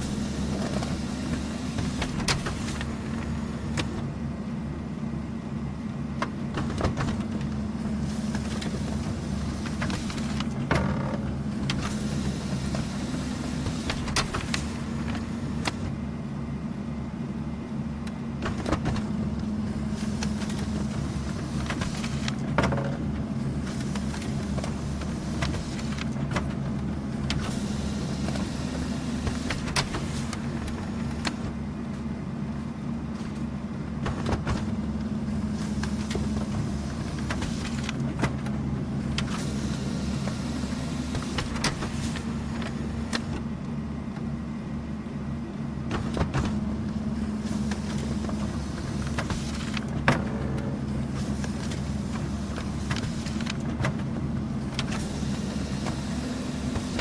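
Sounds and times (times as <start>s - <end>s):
printer motor hum: 0.0s - 57.0s.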